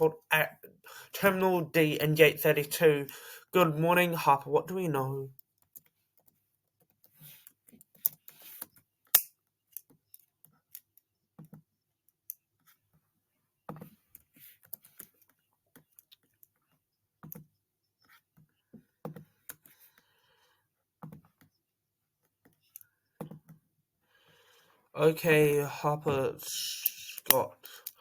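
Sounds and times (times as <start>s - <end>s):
clicks and light taps: 5.3s - 13.0s, 13.6s - 20.1s, 26.0s - 28.0s.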